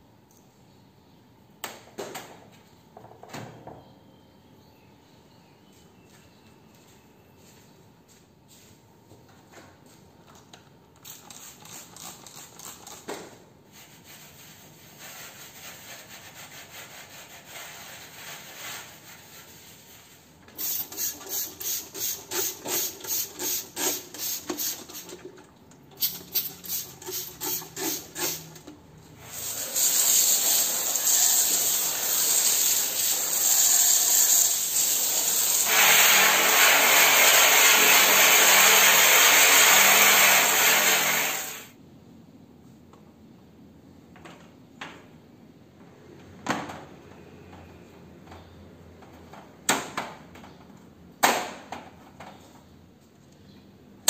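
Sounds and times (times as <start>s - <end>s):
brush scrubbing: 13.7s - 20.3s
loud steady hiss: 29.2s - 41.8s.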